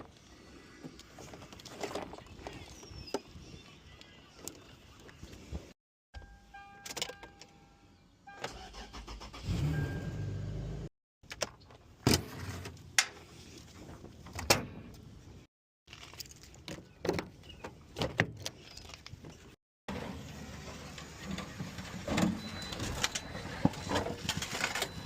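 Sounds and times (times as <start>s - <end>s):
car warning chime: 6.2s - 8.9s, 9.6s - 10.5s
car engine starting and running: 8.3s - 10.9s.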